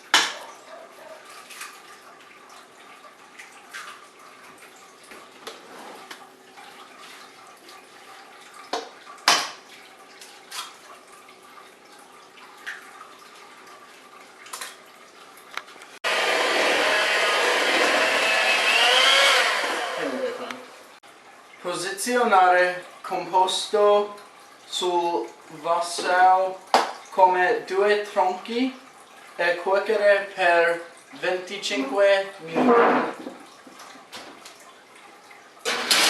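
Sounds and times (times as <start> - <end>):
electric kitchen motor running: 16.0 - 20.8, 35.7 - 36.0.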